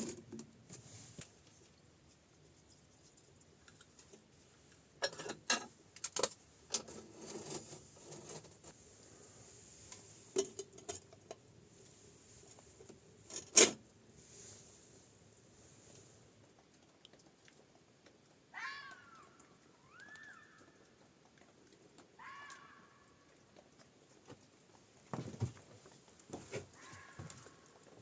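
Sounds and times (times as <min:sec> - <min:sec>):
rustling: 0:00.0 - 0:05.1, 0:05.7 - 0:17.6, 0:18.5 - 0:28.0.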